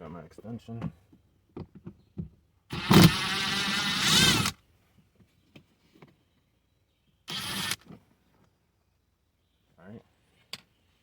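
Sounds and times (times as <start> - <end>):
power driver motor whine: 2.7 - 4.5, 7.3 - 7.8.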